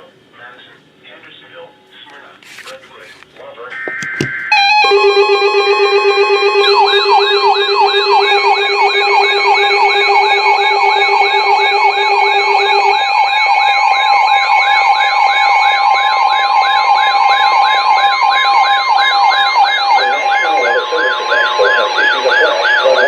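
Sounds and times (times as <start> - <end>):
emergency alert tones: 3.8 - 23.0
siren yelp: 3.8 - 23.0
low buzzing tone: 4.4 - 16.6.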